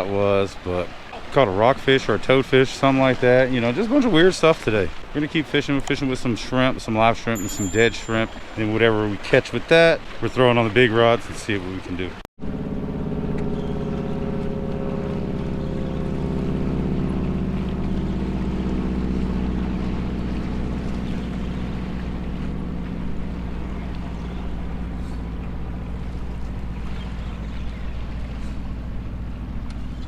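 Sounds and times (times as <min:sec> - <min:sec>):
motorboat engine drone: 0:07.4 - 0:08.9, 0:12.0 - 0:30.0.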